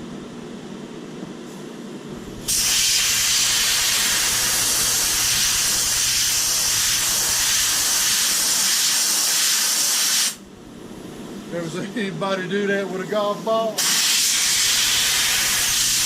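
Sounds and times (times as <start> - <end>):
compressed air hissing from hose nozzle: 2.4 - 10.4, 13.8 - 16.0.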